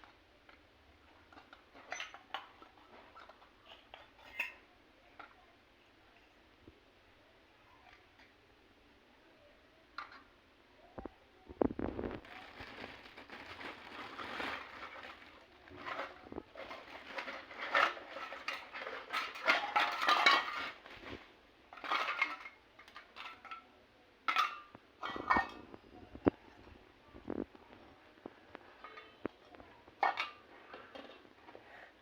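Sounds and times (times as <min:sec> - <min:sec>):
toy kitchenware clinking: 0:01.1 - 0:05.4, 0:15.8 - 0:20.8, 0:21.8 - 0:23.7, 0:28.7 - 0:31.3.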